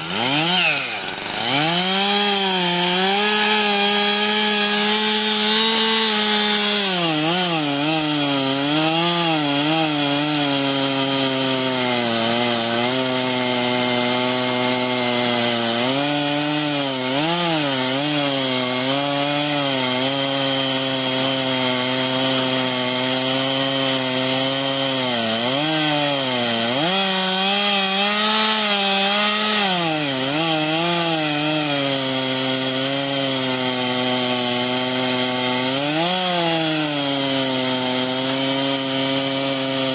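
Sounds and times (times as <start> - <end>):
chainsaw cutting through wood: 0.0 - 39.9.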